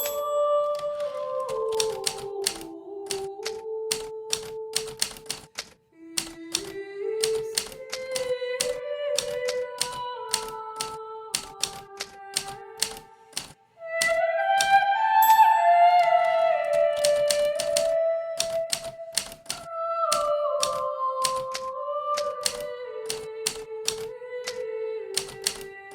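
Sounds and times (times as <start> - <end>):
typewriter keys striking: 0.0 - 14.8, 16.0 - 24.6, 25.2 - 25.9
slow melodic music: 14.2 - 19.2.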